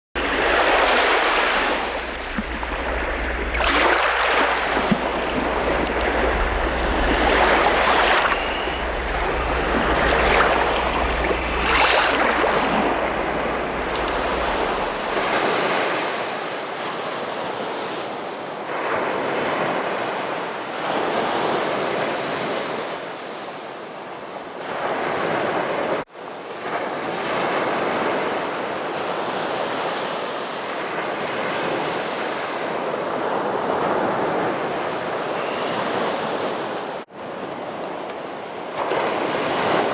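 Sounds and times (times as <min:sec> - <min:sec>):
sea surf breaking on shore: 0:02.7 - 0:16.5.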